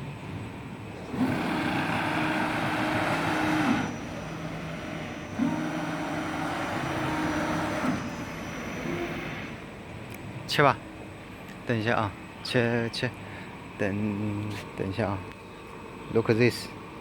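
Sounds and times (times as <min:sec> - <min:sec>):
laser cutter motor whine with hiss: 0:01.1 - 0:09.7.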